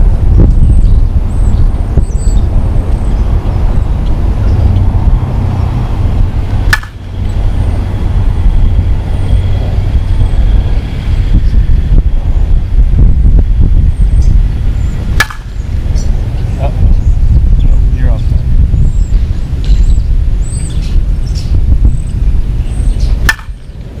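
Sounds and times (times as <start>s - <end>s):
wind buffeting microphone: 0.0s - 24.0s
sharp crack: 6.6s - 7.0s, 15.1s - 15.6s, 23.2s - 23.7s.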